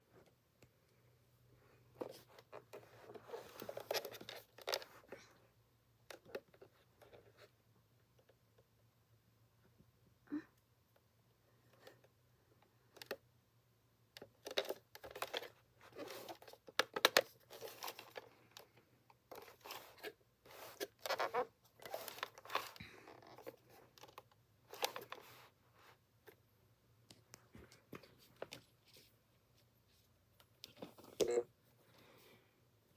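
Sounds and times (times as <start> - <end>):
objects being handled rustling: 1.9 - 5.3, 14.4 - 26.4.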